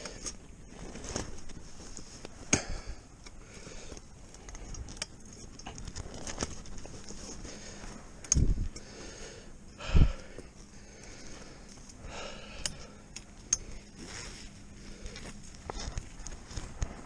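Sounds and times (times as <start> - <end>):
rustling: 0.0 - 9.0, 12.8 - 17.0.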